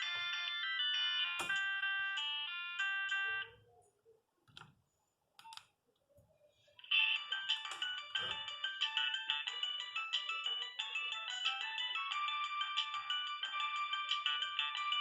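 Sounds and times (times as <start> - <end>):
polyphonic ringtone melody: 0.0 - 3.6, 6.8 - 15.0.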